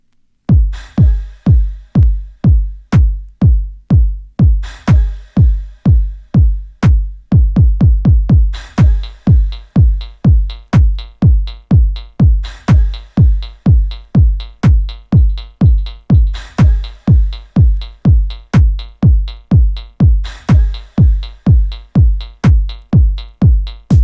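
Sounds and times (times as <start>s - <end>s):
deep kick drum: 0.5s - 24.0s
electronic dance music from vinyl: 0.5s - 24.0s.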